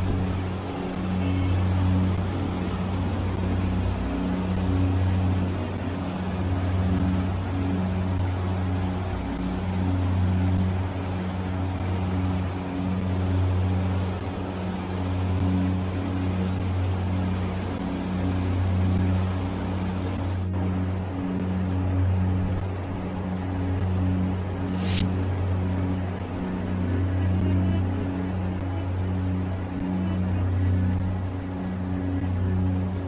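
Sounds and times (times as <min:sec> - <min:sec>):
low mechanical hum: 0:00.0 - 0:33.0
steady hiss: 0:24.0 - 0:26.0.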